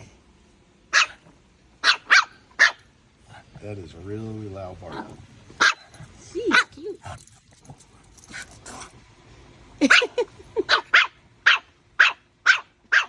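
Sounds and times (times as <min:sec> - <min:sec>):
puppy yapping: 0:00.9 - 0:01.2, 0:01.8 - 0:02.8, 0:04.9 - 0:05.9, 0:06.5 - 0:06.8, 0:09.9 - 0:13.0.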